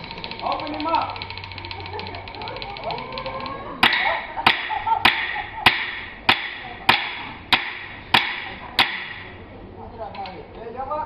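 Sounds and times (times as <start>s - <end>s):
sharp ringing knocks: 3.8s - 9.3s.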